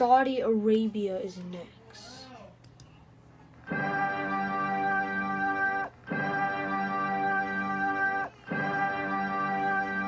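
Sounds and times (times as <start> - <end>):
emergency alert alarm: 3.7 - 10.0.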